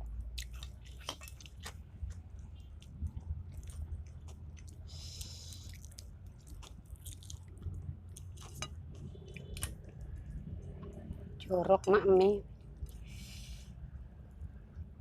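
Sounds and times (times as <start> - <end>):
person chewing food: 0.0 - 11.0.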